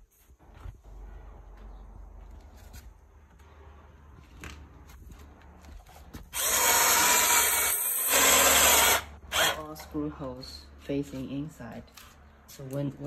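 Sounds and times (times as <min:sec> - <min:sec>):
loud harsh rasping: 0:06.3 - 0:09.8.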